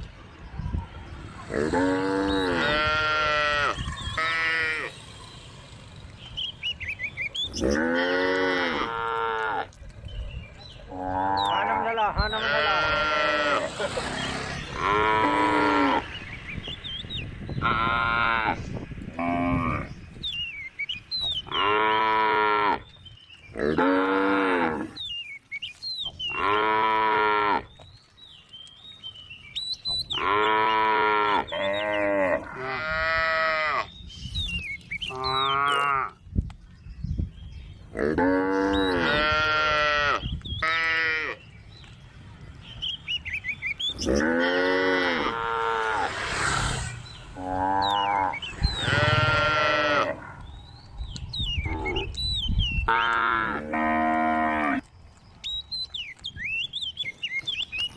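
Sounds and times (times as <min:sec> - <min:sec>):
cows mooing: 0:01.5 - 0:05.0, 0:07.5 - 0:09.8, 0:10.9 - 0:16.2, 0:17.6 - 0:19.9, 0:21.4 - 0:22.8, 0:23.6 - 0:25.0, 0:26.3 - 0:27.7, 0:30.1 - 0:33.9, 0:35.1 - 0:36.2, 0:37.9 - 0:41.4, 0:43.9 - 0:50.5, 0:51.6 - 0:52.2, 0:52.9 - 0:54.9.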